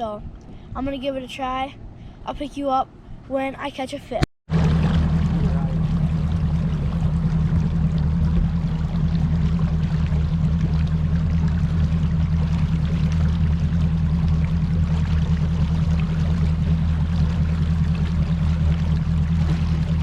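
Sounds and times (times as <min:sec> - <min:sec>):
boat motor humming: 0:04.5 - 0:20.0
water rushing: 0:04.5 - 0:20.0.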